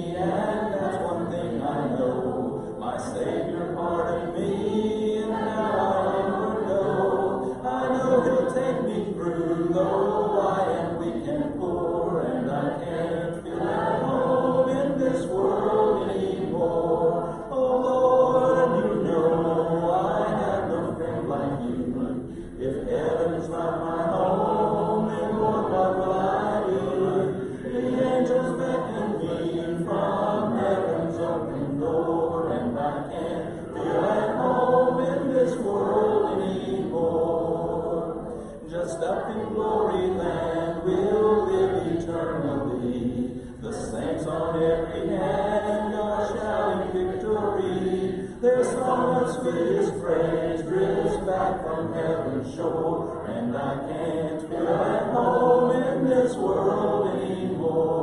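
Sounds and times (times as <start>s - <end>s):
congregation singing a hymn: 0.0s - 58.0s.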